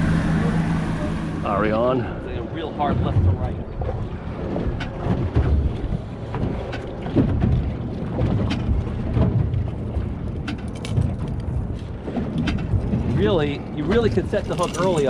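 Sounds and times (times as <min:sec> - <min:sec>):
wind buffeting microphone: 0:00.0 - 0:15.0
knocks and clatters: 0:04.5 - 0:13.2.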